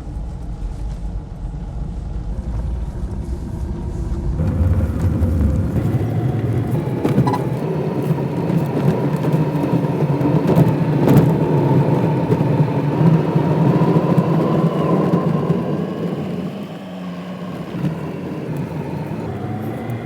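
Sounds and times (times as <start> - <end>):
vehicle engine and road noise: 0.0 - 20.0.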